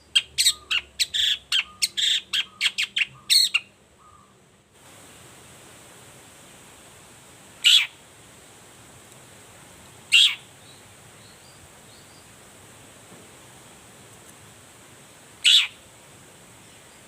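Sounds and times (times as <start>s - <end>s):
steady hiss: 4.5s - 17.0s.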